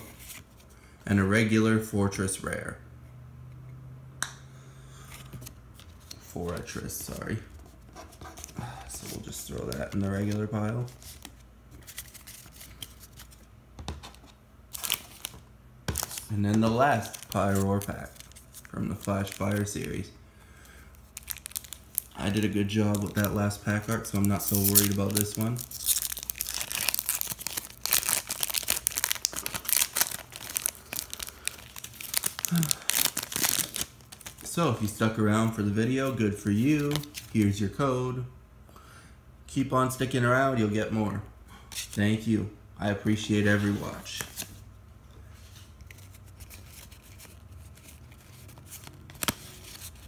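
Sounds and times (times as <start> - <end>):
foil wrapper crinkling and tearing: 14.7 - 20.0, 21.0 - 34.6.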